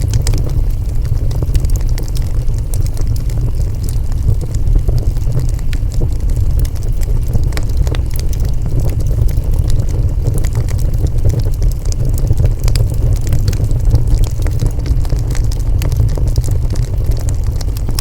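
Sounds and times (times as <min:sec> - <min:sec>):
low rumble: 0:00.0 - 0:18.0
wood fire crackling and popping: 0:00.0 - 0:18.0.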